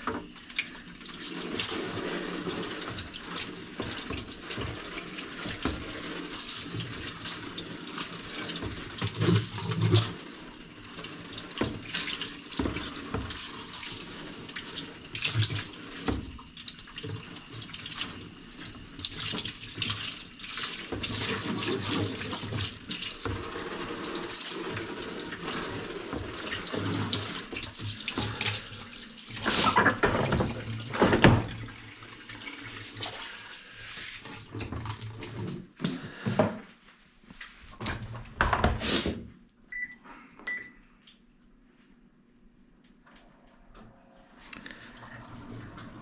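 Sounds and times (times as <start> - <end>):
water running and splashing: 0.0 - 35.4
short high beeps: 39.7 - 40.8.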